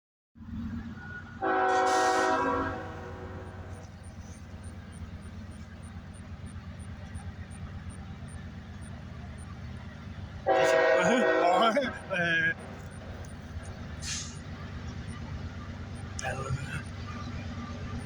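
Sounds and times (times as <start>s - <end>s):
low rumble of train: 0.4s - 18.0s
locomotive air horn blast: 1.4s - 3.9s, 10.4s - 12.9s, 14.0s - 14.5s.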